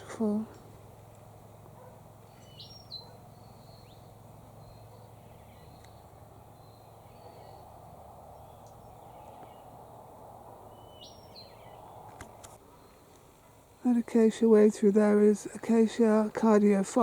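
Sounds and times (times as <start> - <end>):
outdoor background hiss: 0.0 - 17.0
faint bird chirps: 1.8 - 9.8.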